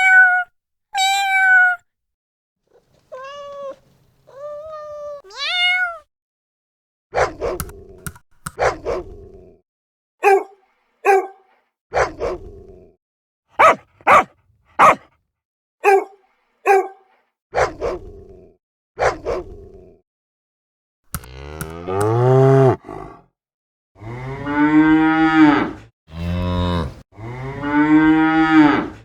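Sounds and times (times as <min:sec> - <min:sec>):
dog barking: 0:07.2 - 0:07.6, 0:08.6 - 0:09.0, 0:10.2 - 0:12.4, 0:13.6 - 0:15.1, 0:15.8 - 0:18.0, 0:19.0 - 0:19.4.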